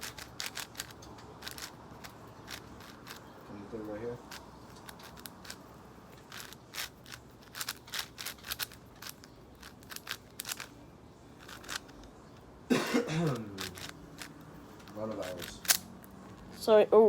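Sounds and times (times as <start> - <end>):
puzzle cube clicking: 0.0 - 3.3, 4.3 - 10.7, 11.4 - 12.1, 13.4 - 15.9.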